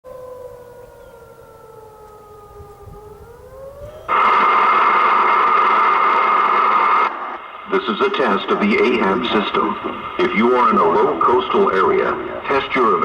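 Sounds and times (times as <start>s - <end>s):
faint wailing siren: 0.0s - 7.4s
loud steady siren tone: 0.0s - 7.6s.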